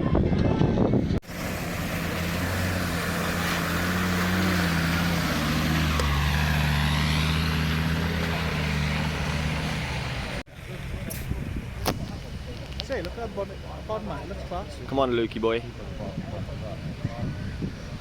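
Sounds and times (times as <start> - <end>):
vehicle engine running at low revs: 1.2 - 14.6.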